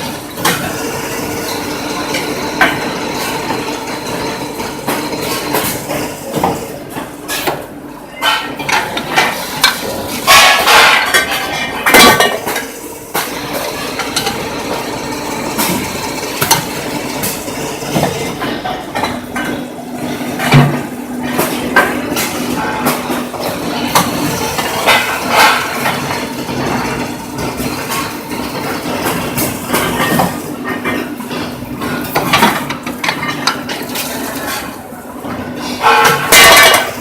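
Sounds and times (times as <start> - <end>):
loud metal clanks: 20.4 - 28.2.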